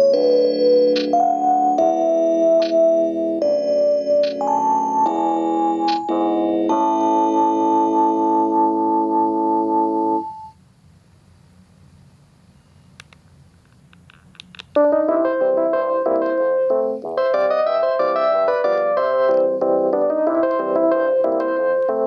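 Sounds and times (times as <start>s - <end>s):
cordless phone polyphonic ringtone: 0.0s - 10.6s.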